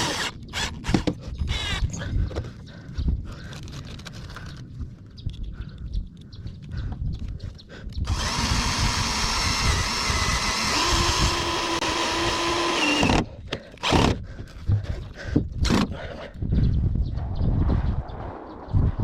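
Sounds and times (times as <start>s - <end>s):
handheld power tool running: 0.0s - 1.9s, 8.1s - 14.2s
wind rumbling on microphone: 0.0s - 19.0s.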